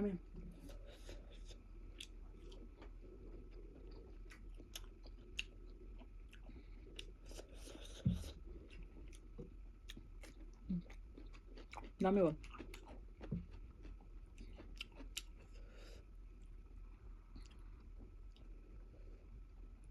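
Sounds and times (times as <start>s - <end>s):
wet chewing and lip smacks: 0.5s - 18.6s
soft thump: 8.0s - 8.4s.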